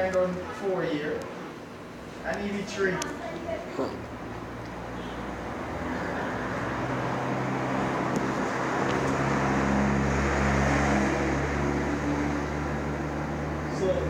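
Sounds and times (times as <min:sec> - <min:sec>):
vehicle engine humming: 0:03.0 - 0:14.0.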